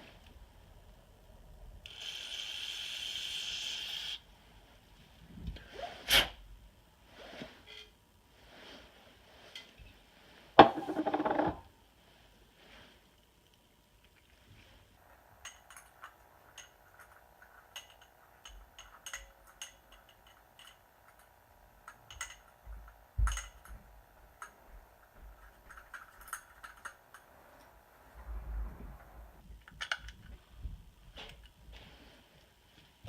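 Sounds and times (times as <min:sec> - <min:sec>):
faint steady hum: 0:00.0 - 0:33.0
knock on workbench: 0:10.6 - 0:11.6
metal parts and tools clinking: 0:15.4 - 0:21.3.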